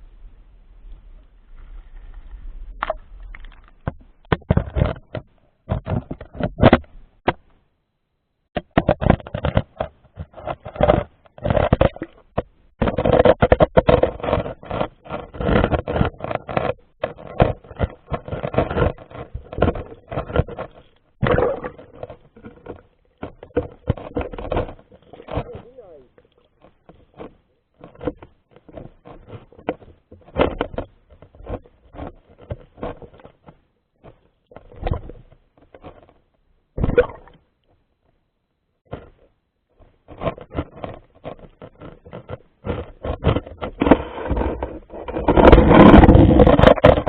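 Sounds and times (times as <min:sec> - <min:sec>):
knocks and scrapes: 0:00.8 - 0:07.7, 0:08.5 - 0:47.0
water splashing and sloshing: 0:08.6 - 0:37.6.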